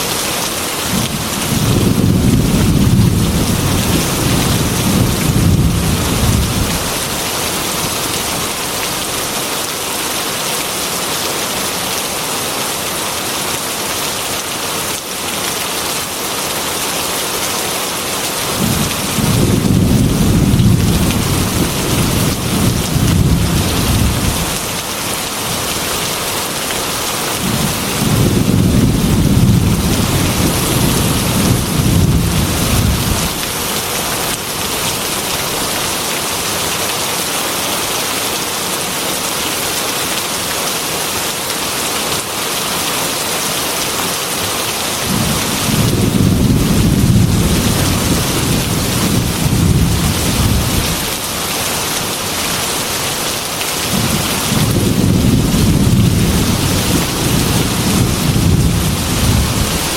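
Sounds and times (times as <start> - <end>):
heavy rain on metal roof: 0.0 - 59.9
rolling thunder: 0.9 - 7.1, 18.6 - 24.6, 27.4 - 33.5, 45.1 - 51.1, 53.9 - 59.9.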